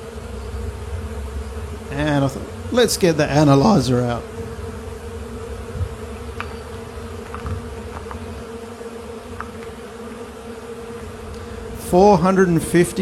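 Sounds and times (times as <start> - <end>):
bees buzzing: 0.0 - 13.0
faint ticks: 5.7 - 8.5, 9.3 - 9.8.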